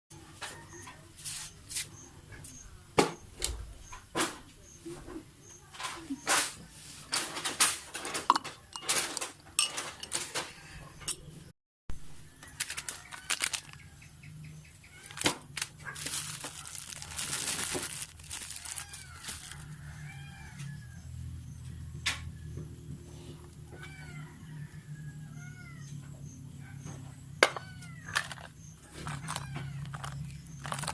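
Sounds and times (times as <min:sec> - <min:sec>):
objects clicking and knocking: 0:05.8 - 0:11.2, 0:12.4 - 0:13.8, 0:15.0 - 0:19.6, 0:27.4 - 0:30.9.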